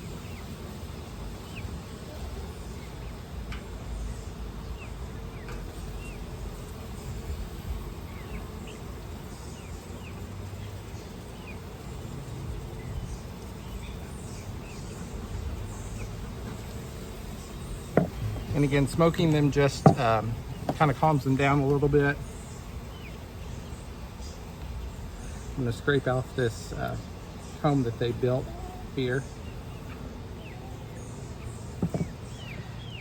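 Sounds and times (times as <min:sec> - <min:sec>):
honeybees buzzing: 0:00.0 - 0:33.0.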